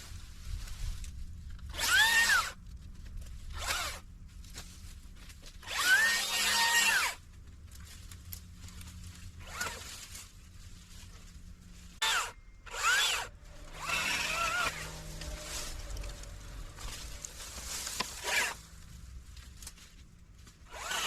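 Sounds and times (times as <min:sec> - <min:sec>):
low steady hum: 0:00.0 - 0:21.0
power drill motor whine: 0:01.7 - 0:02.6, 0:03.6 - 0:04.0, 0:05.6 - 0:07.2, 0:12.0 - 0:16.2, 0:18.2 - 0:18.6, 0:20.7 - 0:21.0.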